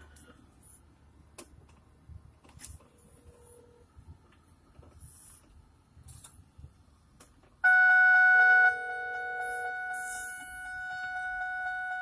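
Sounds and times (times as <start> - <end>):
seatbelt warning alarm tone: 7.6 - 12.0.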